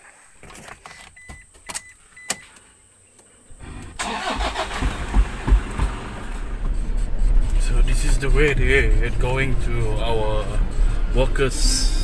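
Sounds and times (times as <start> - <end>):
vehicle engine starting and running: 3.5 - 12.0.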